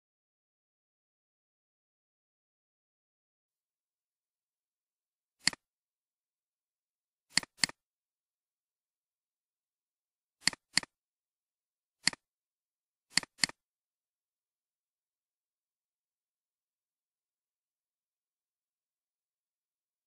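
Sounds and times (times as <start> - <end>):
computer mouse clicking: 5.4 - 5.6, 7.3 - 7.8, 10.4 - 11.0, 12.0 - 12.2, 13.1 - 13.6.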